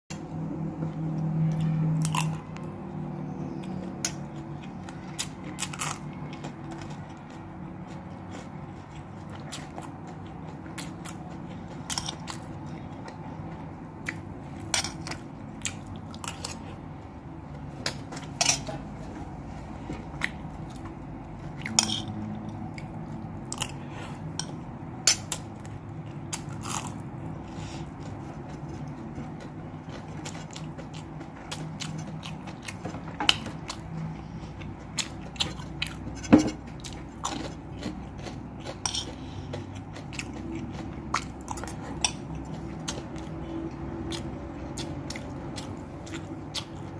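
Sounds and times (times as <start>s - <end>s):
steady low hum: 0.1s - 46.9s
chewing and biting: 1.0s - 18.9s, 19.6s - 46.9s
cutlery scraping on a plate: 36.1s - 36.7s.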